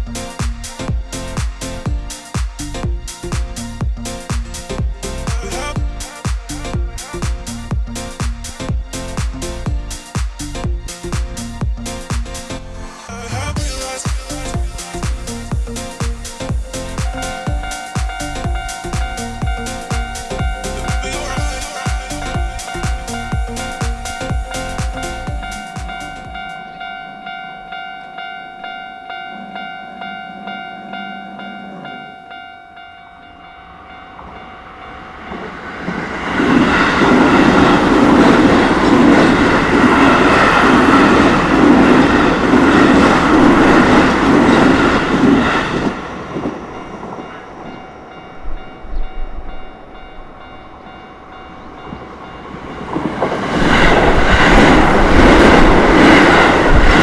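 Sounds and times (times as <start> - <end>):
train wheels on rails: 13.6 - 26.8, 33.7 - 57.0
level crossing warning bell: 16.5 - 57.0.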